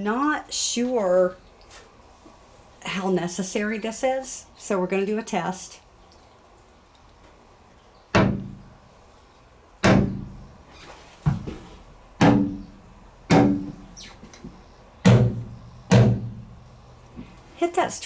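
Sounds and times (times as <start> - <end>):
knocks on metal panel ringing: 8.2 - 8.6, 9.8 - 10.4, 12.2 - 12.7, 13.3 - 13.8, 15.1 - 16.4.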